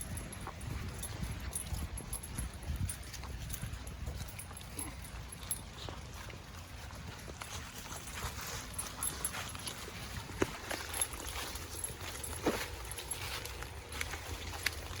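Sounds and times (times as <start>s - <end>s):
footsteps on wet trail: 0.0s - 15.0s.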